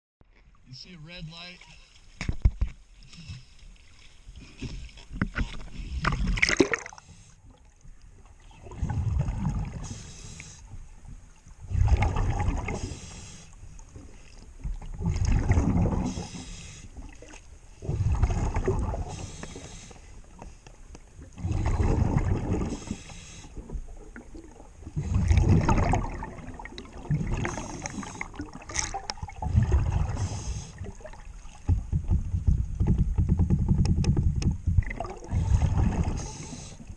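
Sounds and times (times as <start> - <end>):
diver exhaling bubbles underwater: 8.7 - 10.0, 11.6 - 13.1, 15.0 - 16.5, 17.8 - 19.3, 21.4 - 23.0, 24.0 - 31.2, 34.9 - 36.7.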